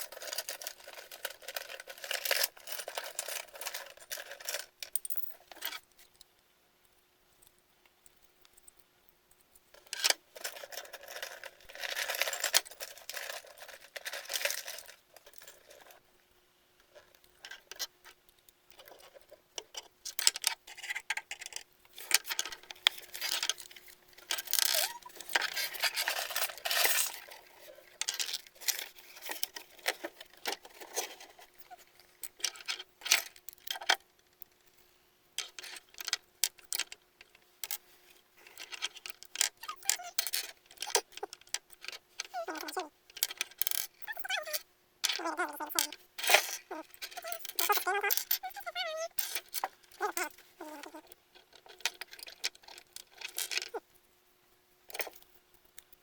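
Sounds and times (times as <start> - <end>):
plastic toy pieces clattering: 0.0 - 5.7, 9.9 - 15.9, 24.2 - 34.0, 38.5 - 53.8.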